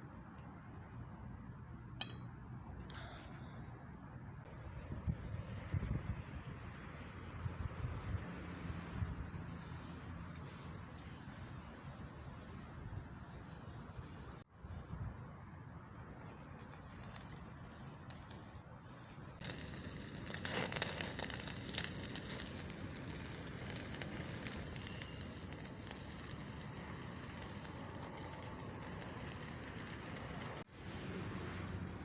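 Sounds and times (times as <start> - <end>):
wood fire crackling and popping: 4.6 - 32.0.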